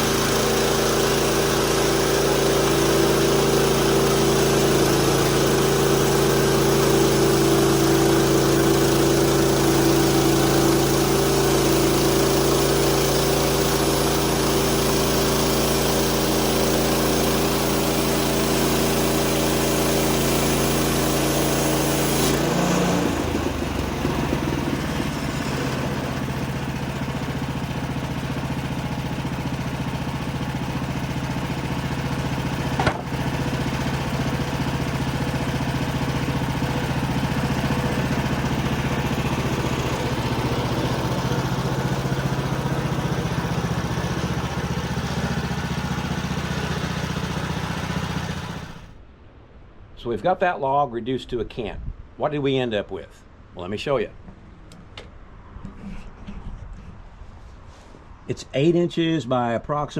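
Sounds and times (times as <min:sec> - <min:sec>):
saw blade cutting log: 0:00.0 - 0:29.1, 0:30.2 - 0:48.9
sawmill engine running: 0:00.0 - 0:49.0.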